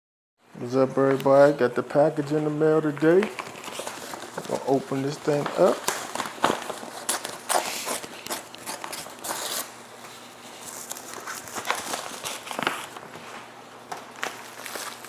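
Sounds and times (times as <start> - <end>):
packaging rustling and crinkling: 2.2 - 15.0
packaging tearing: 3.1 - 13.1, 13.9 - 15.0.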